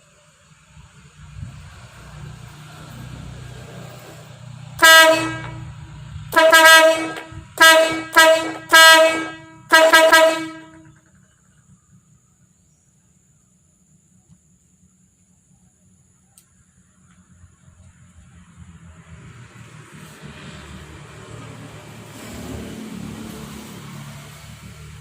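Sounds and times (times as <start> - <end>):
low rumble: 4.6 - 6.4
air horn blasts: 4.8 - 11.1.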